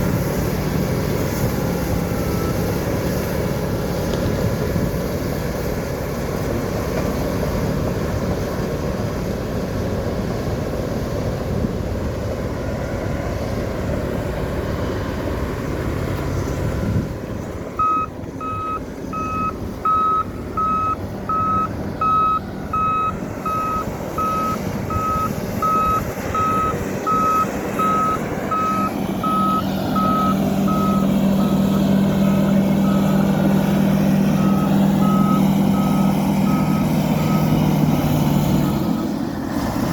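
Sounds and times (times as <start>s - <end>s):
bulldozer diesel engine running: 0.0s - 39.9s
reverse alarm beeps: 17.8s - 31.8s, 34.3s - 37.6s.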